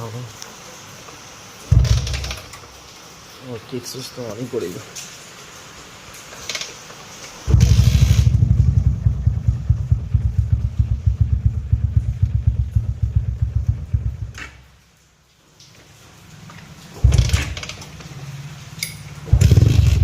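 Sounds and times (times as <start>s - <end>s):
motorcycle kick-start: 1.7s - 2.5s, 7.5s - 10.3s, 17.0s - 17.8s, 19.3s - 20.0s
motorcycle engine running: 7.5s - 14.5s, 19.3s - 20.0s.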